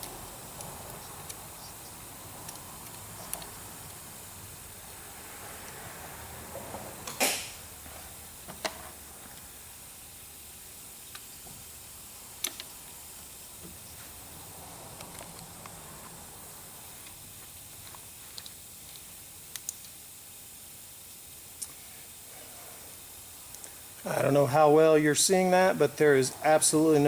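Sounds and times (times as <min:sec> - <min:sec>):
steady low hiss: 0:00.0 - 0:27.0.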